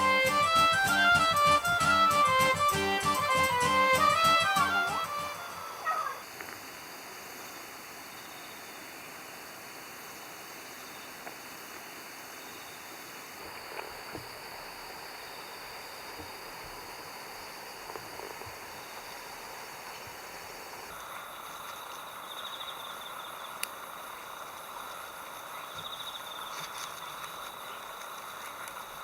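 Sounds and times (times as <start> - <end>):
crickets chirring: 2.4 - 29.0.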